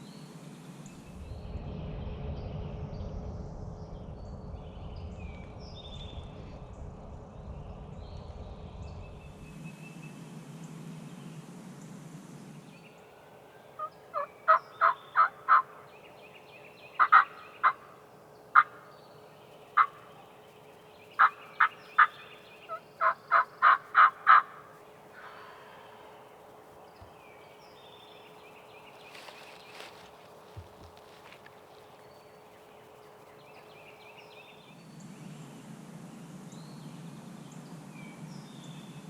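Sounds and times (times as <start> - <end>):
faint steady hum: 0.0 - 39.0
turkey yelping: 13.8 - 15.9, 17.0 - 18.9, 19.7 - 20.3, 21.2 - 25.5.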